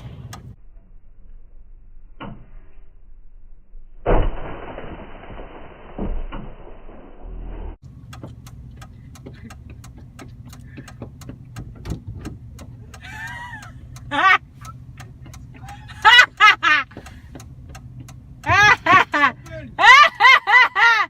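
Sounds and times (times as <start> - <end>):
car engine idling: 7.8 - 21.0.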